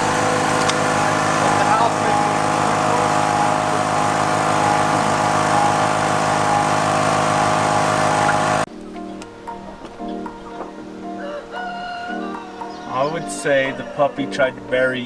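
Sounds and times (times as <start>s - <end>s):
small engine running: 0.0s - 8.7s.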